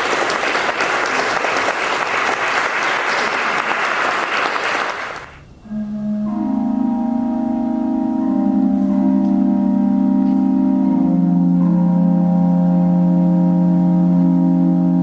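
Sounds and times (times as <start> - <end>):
organ playing sustained chords: 5.4 - 15.0.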